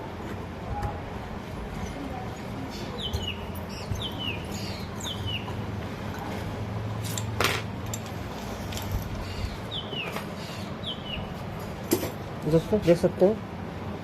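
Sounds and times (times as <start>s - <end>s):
bird chirping: 2.7s - 5.6s, 9.2s - 11.4s.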